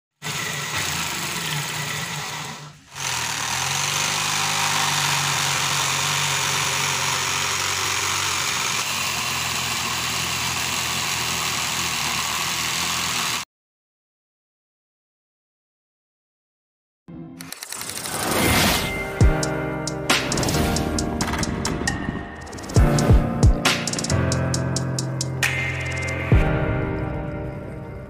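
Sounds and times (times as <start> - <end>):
electric drill motor humming: 0.2 - 13.4.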